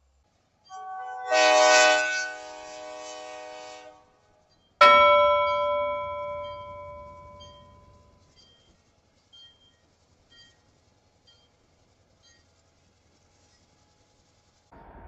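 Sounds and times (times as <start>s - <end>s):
bell-like strike ringing: 0.7s - 2.5s, 4.8s - 8.2s
horn chord: 0.7s - 3.9s.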